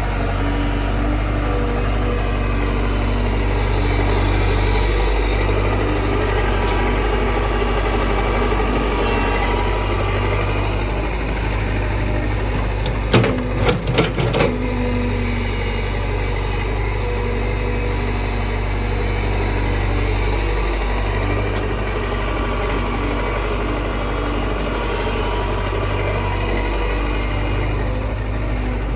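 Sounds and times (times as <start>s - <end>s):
diesel engine running: 0.0s - 28.9s
sharp knocks: 12.5s - 14.7s.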